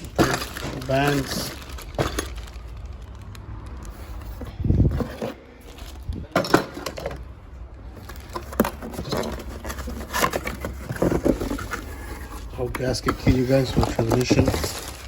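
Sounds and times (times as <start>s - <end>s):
metal parts knocking and clinking: 0.0s - 2.6s.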